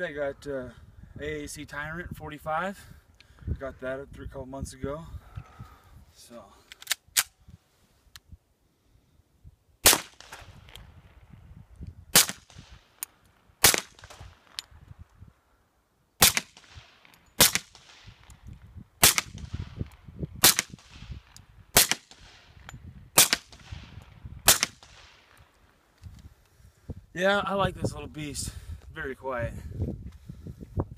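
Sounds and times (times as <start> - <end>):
echoing gunshot tail: 9.8 - 10.6, 16.2 - 18.2, 19.0 - 22.5, 23.2 - 25.2
suppressed pistol shots: 9.8 - 10.6, 12.1 - 12.8, 13.6 - 14.6, 16.2 - 18.2, 19.0 - 19.8, 20.4 - 21.2, 21.8 - 22.5, 23.2 - 23.9, 24.5 - 25.2.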